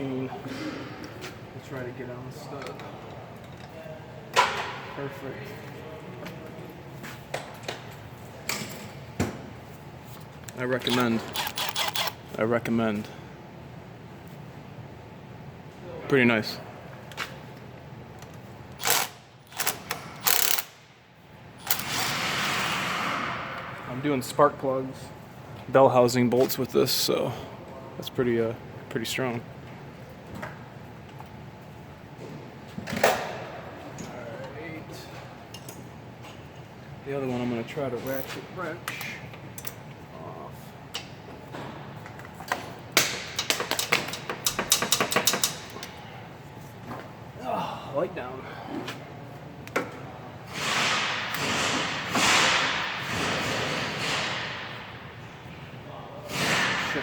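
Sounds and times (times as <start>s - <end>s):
ratchet turning a nut: 10.8s - 12.3s, 18.8s - 20.8s, 21.6s - 22.2s, 43.4s - 45.7s.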